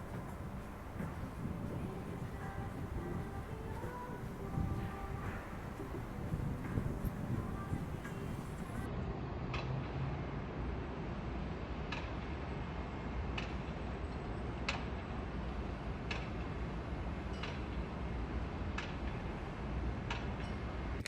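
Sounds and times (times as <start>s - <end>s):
steady low rumble: 0.0s - 8.9s.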